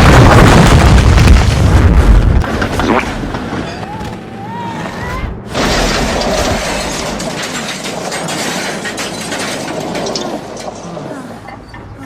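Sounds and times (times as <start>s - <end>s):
train clattering on rails: 5.6s - 12.0s.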